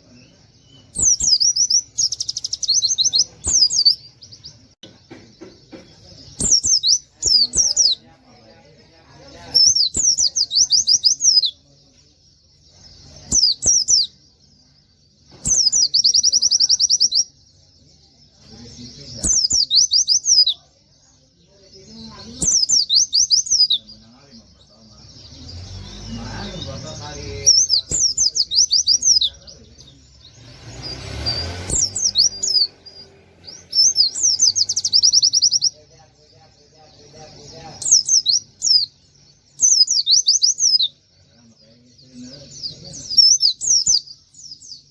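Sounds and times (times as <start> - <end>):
white-eye bird singing: 0.0 - 44.9.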